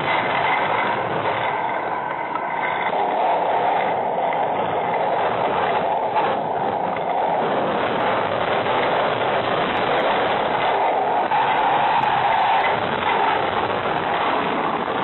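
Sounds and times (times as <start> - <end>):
storm wind and rain: 0.0 - 15.0.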